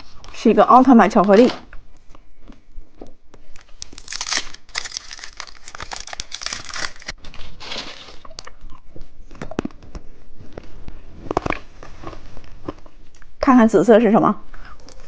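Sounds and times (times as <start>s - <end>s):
candy wrapper crinkling: 3.6s - 8.7s.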